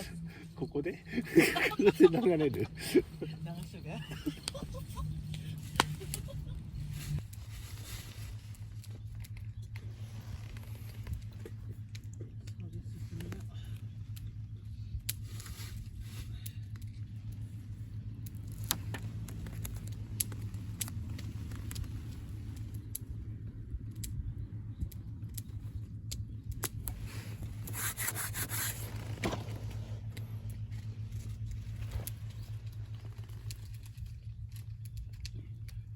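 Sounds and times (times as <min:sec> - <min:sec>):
low rumble: 0:00.0 - 0:35.9
scraping and rubbing: 0:26.9 - 0:34.5.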